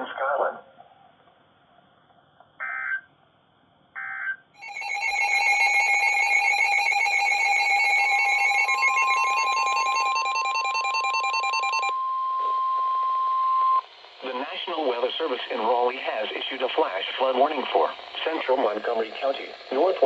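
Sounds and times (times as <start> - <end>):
digital data bursts: 4.6 - 11.9, 13.7 - 20.0
continuous electronic alert tone: 4.6 - 13.8.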